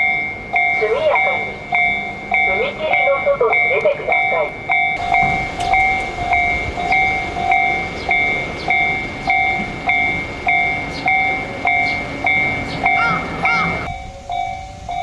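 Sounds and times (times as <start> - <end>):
level-crossing warning bell: 0.0 - 15.0
train running past: 0.0 - 15.0.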